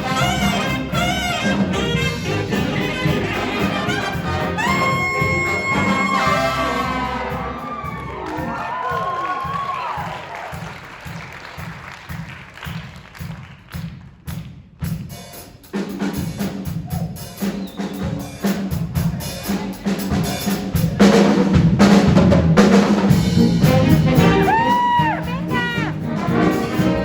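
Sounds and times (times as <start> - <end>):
horns playing: 0.0 - 9.6, 23.2 - 27.0
jazz band playing: 0.0 - 13.4, 14.8 - 27.0
drum kit beat: 0.0 - 27.0.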